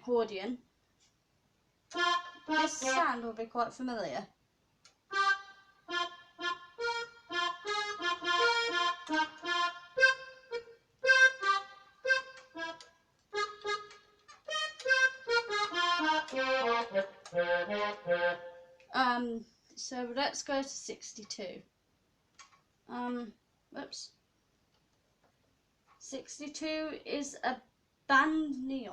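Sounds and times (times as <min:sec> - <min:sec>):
keyboard accordion notes and chords: 0:01.9 - 0:03.2, 0:05.1 - 0:18.8.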